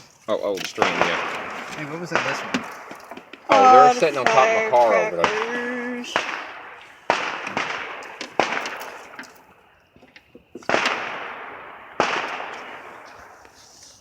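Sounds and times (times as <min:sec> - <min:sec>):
firework bangs echoing: 0:00.7 - 0:09.8, 0:10.6 - 0:13.5
small firework pops: 0:05.2 - 0:11.3.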